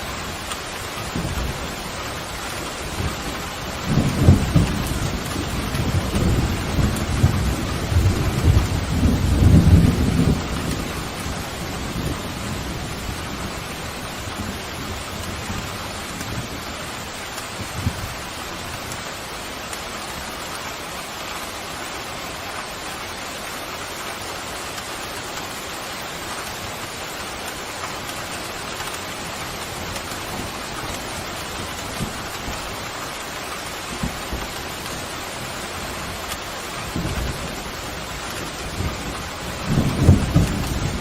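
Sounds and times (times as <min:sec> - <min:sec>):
heavy rain falling: 0:00.0 - 0:41.0
thunder rumbling: 0:01.0 - 0:18.9, 0:33.9 - 0:41.0.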